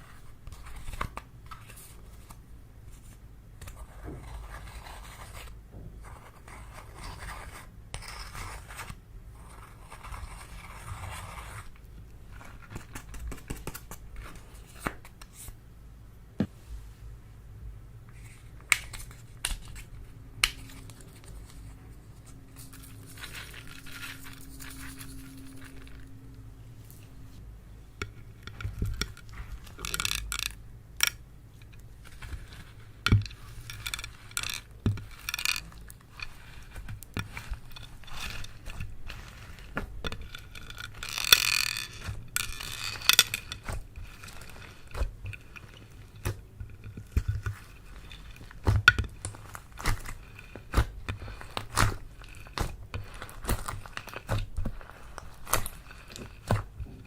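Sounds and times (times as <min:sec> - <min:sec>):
slime squelch: 0:41.9 - 0:57.0.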